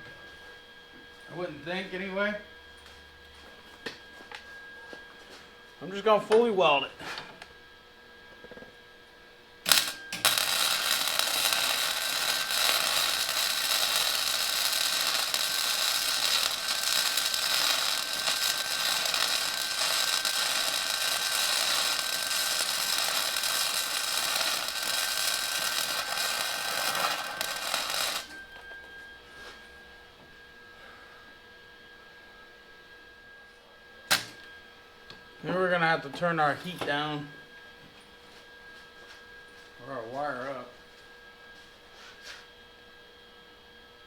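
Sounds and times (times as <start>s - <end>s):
welding arc crackling sizzle: 9.6s - 28.4s.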